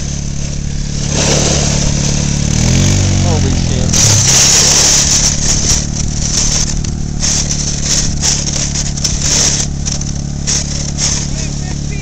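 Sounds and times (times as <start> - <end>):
quad bike engine running: 0.0 - 12.0
rushing hiss: 0.6 - 3.0.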